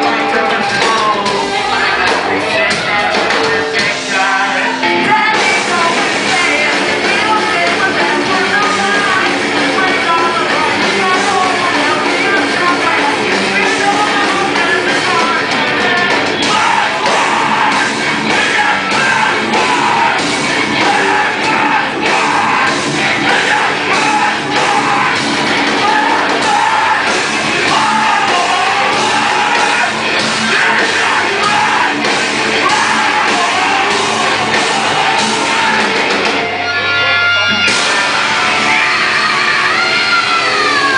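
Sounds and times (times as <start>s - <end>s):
drum beat: 0.0s - 36.5s
live rock band: 0.0s - 40.9s
person singing: 0.0s - 40.9s.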